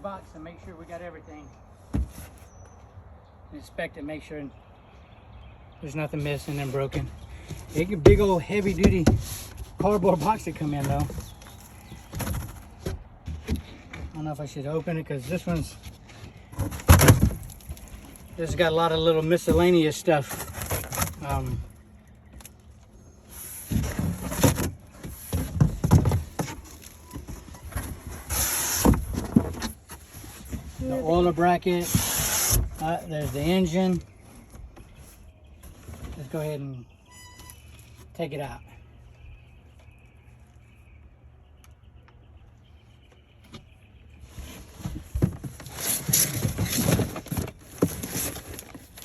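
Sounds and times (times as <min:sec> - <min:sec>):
cardboard packaging rustling: 0:06.4 - 0:13.9, 0:15.4 - 0:22.0, 0:44.3 - 0:49.0
packaging rustling and crinkling: 0:19.4 - 0:21.7, 0:44.5 - 0:49.0.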